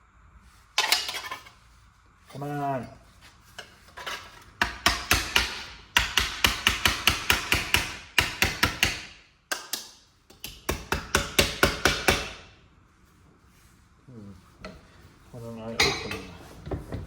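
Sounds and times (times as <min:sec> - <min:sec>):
hammer beating sheet metal: 0:04.6 - 0:12.5.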